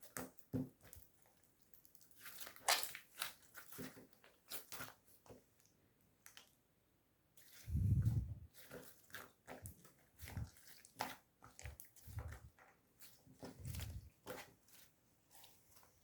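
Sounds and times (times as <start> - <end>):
soft low thuds: 7.7 - 8.5.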